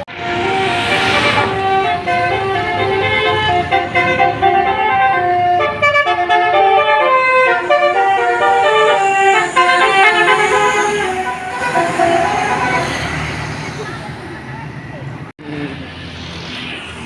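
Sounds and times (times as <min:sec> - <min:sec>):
multi-tone vehicle horn tune: 0:00.1 - 0:13.4.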